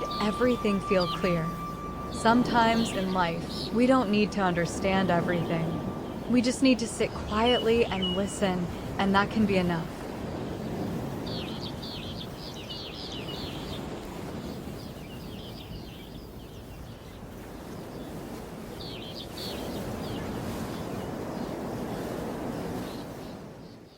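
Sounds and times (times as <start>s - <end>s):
ocean waves washing on beach: 0.0s - 23.9s.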